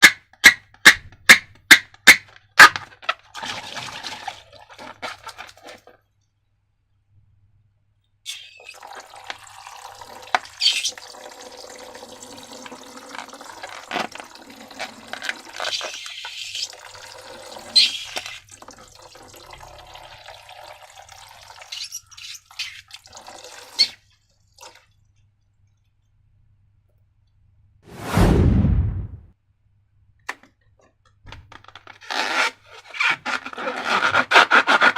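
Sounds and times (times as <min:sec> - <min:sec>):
liquid pouring into container: 0:08.3 - 0:21.8, 0:22.9 - 0:25.2
loud thump: 0:27.9 - 0:29.3.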